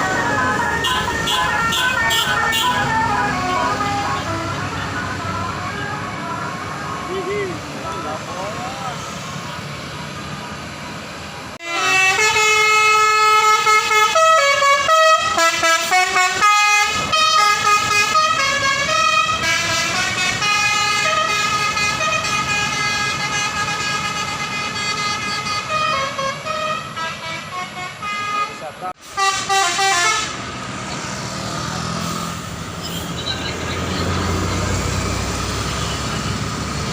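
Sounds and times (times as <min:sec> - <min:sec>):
musical air horn melody: 0:00.2 - 0:06.0, 0:11.6 - 0:30.4.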